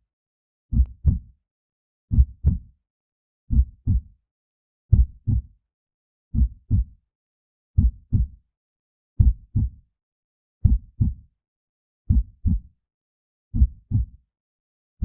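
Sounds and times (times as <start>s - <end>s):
heartbeat thumps: 4.9s - 5.4s, 9.2s - 9.7s, 13.6s - 14.0s.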